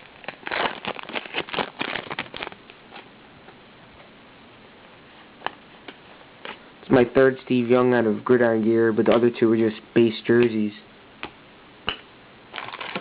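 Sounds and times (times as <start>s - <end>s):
card packaging rustling: 0.0s - 3.1s, 12.5s - 13.0s.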